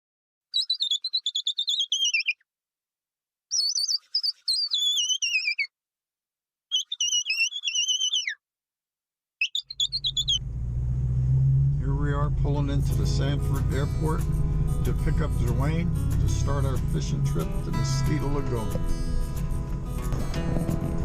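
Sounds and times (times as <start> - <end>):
high warbling whistled song: 0.5 - 2.4, 3.5 - 5.7, 6.7 - 8.4, 9.4 - 10.4.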